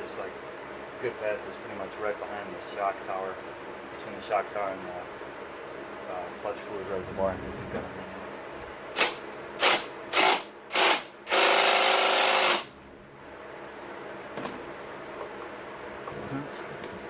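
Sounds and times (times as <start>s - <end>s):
power tool driving a bolt: 9.0s - 12.7s.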